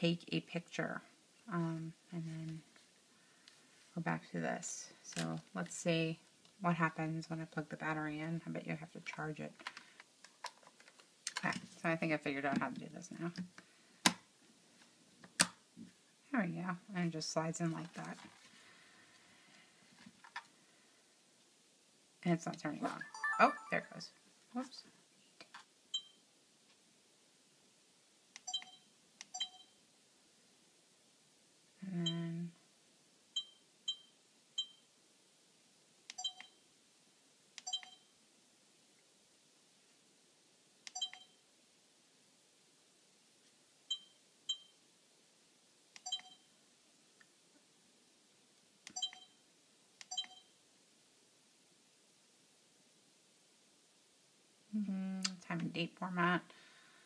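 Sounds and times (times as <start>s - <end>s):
short electronic beeps: 28.5s - 29.8s, 36.2s - 36.6s, 37.7s - 38.1s, 41.0s - 41.4s, 46.0s - 46.4s, 49.0s - 49.4s, 50.1s - 50.5s.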